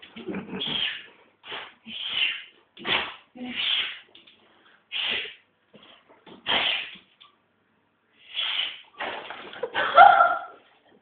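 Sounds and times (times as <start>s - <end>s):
dog sneezing: 0.6s - 4.1s, 4.9s - 5.4s, 6.4s - 7.0s, 8.2s - 9.3s.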